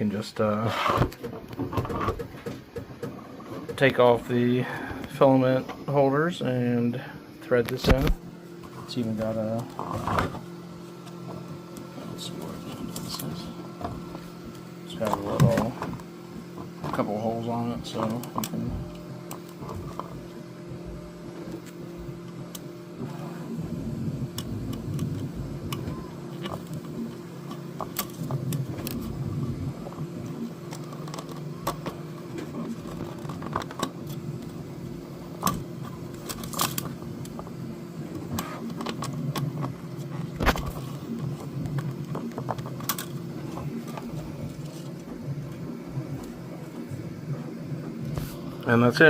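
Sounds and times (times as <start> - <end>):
steady low hum: 0.0 - 49.0
plastic spool clicks and rattles: 30.7 - 34.5, 35.4 - 37.5, 38.2 - 44.9.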